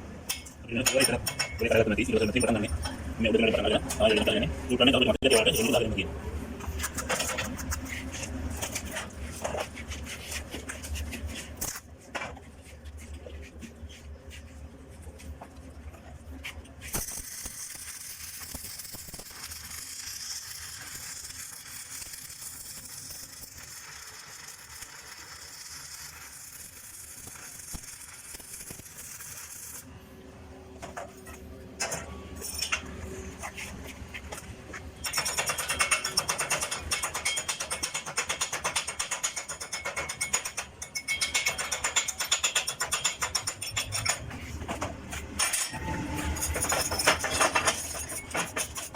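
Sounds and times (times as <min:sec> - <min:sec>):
welding arc crackling hiss: 0:16.8 - 0:29.9.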